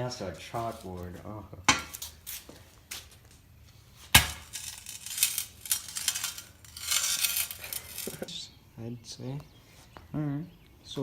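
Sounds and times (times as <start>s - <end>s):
tool scraping cracked glass: 4.1s - 8.3s.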